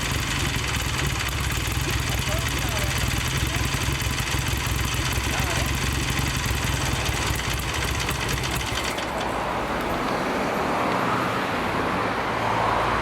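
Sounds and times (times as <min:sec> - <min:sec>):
motorcycle engine idling: 0:00.0 - 0:10.2.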